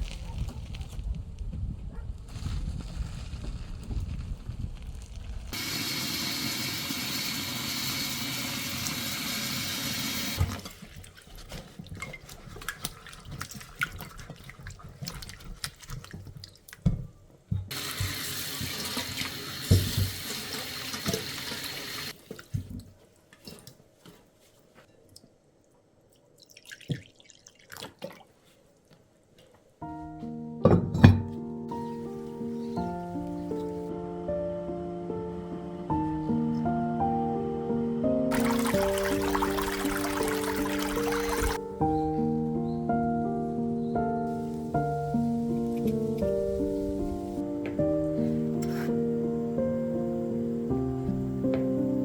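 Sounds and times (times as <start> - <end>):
kitchen tap running into sink: 5.6 - 11.0, 17.7 - 22.1, 38.3 - 41.6.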